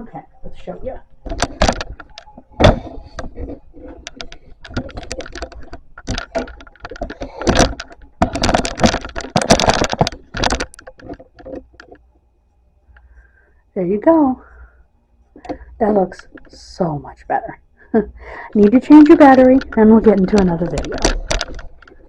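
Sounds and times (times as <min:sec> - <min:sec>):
handling knocks clicks and rustles: 0:00.6 - 0:12.1, 0:18.5 - 0:22.0.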